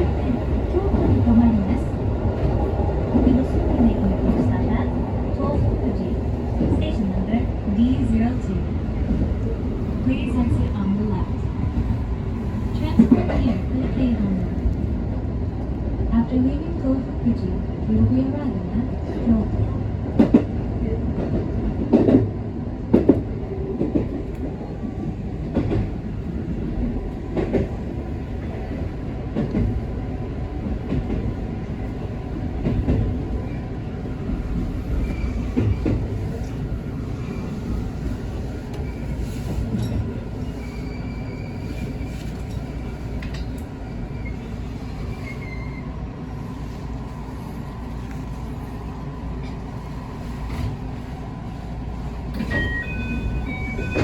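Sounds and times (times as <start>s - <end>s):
electric train rumbling: 0.0s - 54.0s
faint wheel squeal: 40.4s - 42.4s, 44.2s - 45.9s.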